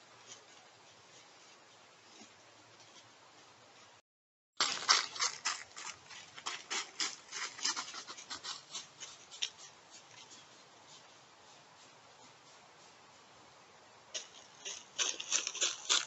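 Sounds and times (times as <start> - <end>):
animal crunching: 4.6 - 11.0, 14.1 - 16.0.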